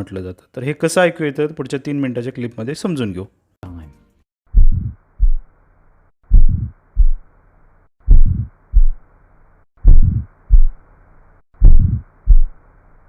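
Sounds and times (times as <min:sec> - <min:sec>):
heartbeat with murmur: 0:04.5 - 0:05.5, 0:06.3 - 0:07.3, 0:08.0 - 0:09.0, 0:09.8 - 0:10.8, 0:11.6 - 0:12.6.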